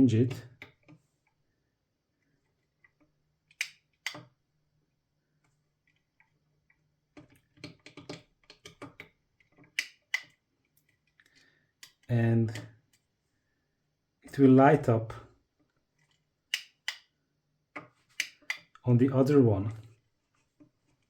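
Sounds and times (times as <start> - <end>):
plastic connectors clicking: 18.1 - 18.8.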